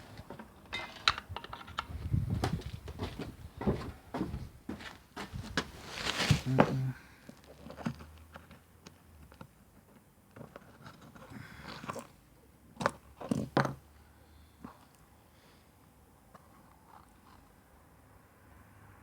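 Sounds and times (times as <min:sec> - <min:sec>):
knocks and scrapes of handling: 0:00.0 - 0:13.8
footsteps: 0:02.0 - 0:07.0.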